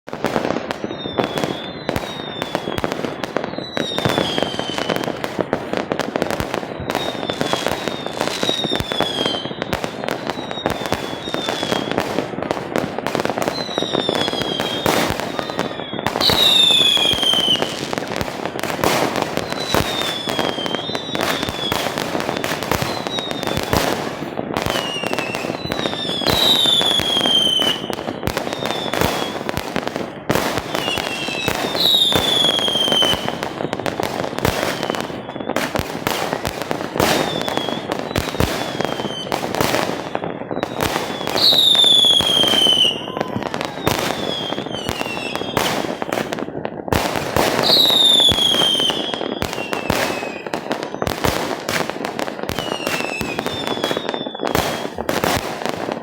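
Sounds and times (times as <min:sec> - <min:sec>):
fireworks bangs and crackle: 0:00.0 - 0:56.0
fireworks whistles falling in pitch: 0:00.1 - 0:56.0.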